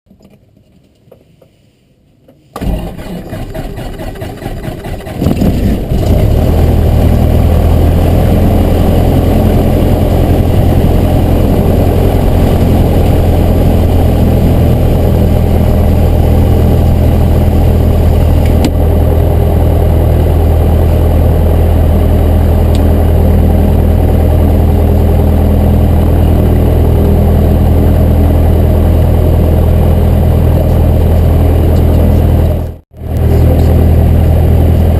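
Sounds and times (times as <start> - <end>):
starter motor cranking: 2.6 - 6.3
aircraft piston engine running: 2.6 - 34.9.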